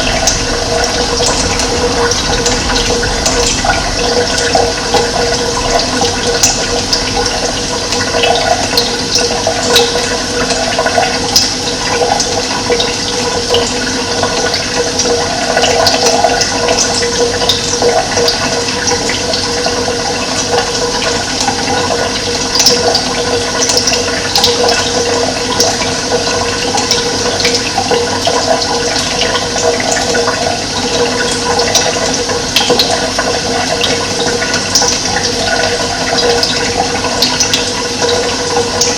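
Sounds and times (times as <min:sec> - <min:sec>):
high splashing: 0:00.0 - 0:10.4
running water rushing: 0:00.0 - 0:38.9.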